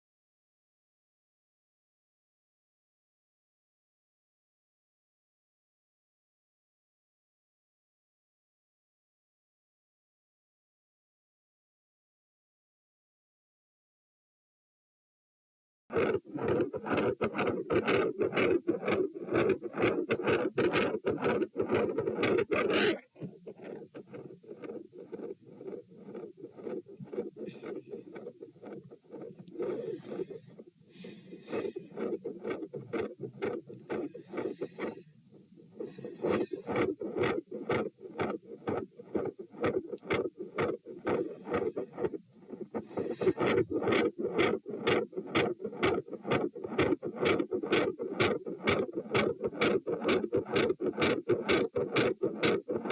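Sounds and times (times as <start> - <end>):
breath noise: 16.2 - 49.8
heartbeat: 26.0 - 52.8.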